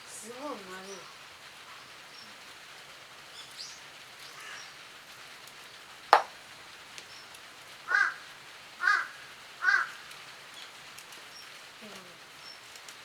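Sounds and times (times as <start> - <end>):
crow cawing: 4.4 - 4.7, 7.9 - 10.1
sharp snap: 6.2 - 6.4.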